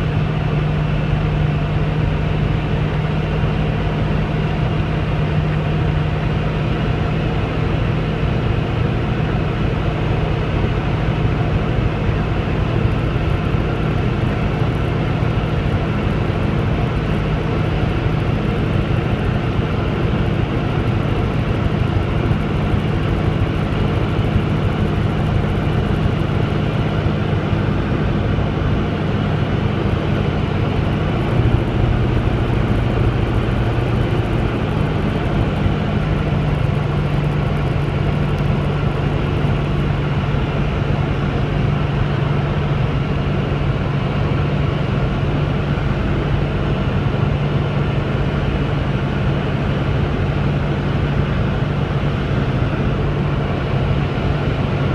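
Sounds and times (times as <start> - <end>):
light aircraft engine droning: 0.0 - 54.9.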